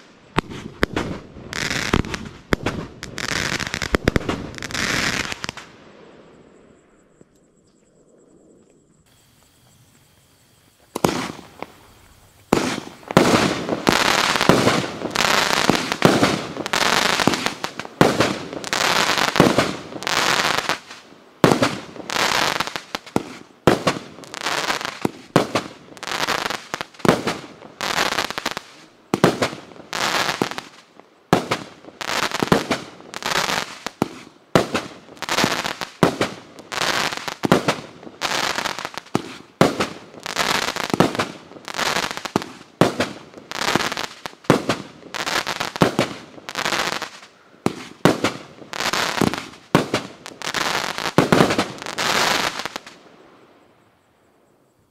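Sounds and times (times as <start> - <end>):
fireworks cake shots firing: 0.4 - 5.7, 10.9 - 11.8, 12.4 - 18.5.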